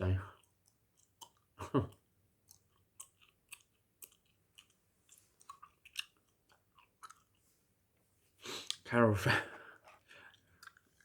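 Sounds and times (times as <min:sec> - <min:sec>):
gum chewing clicks and smacks: 0:00.3 - 0:07.5, 0:09.8 - 0:11.0.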